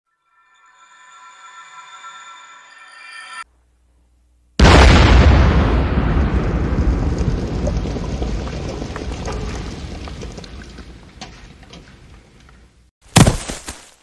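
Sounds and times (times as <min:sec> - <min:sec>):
cartoon explosion rumbling: 0:04.6 - 0:11.2.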